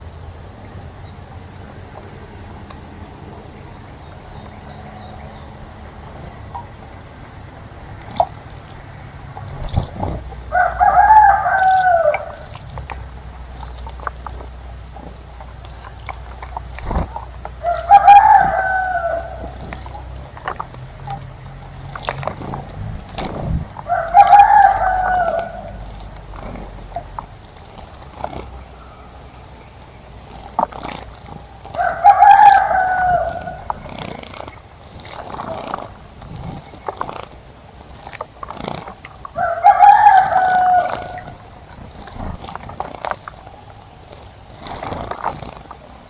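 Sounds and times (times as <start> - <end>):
small birds chirping: 0.0 - 46.0
rooster crowing: 10.5 - 12.6, 17.6 - 19.6, 22.8 - 25.9, 31.7 - 33.8, 39.4 - 41.4.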